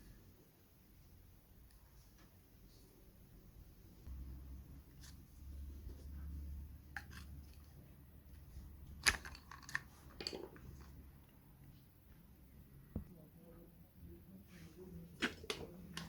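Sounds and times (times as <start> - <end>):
small parts and tools clicking: 8.3 - 11.4.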